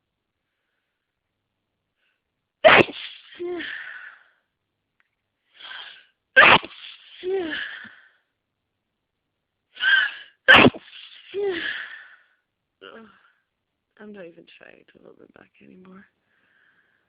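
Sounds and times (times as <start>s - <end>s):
person sneezing: 2.6s - 4.1s, 5.6s - 8.0s, 9.8s - 12.1s.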